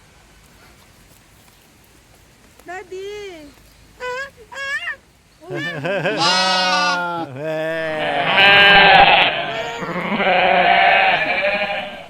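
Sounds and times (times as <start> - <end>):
sheep bleating: 5.5 - 12.0.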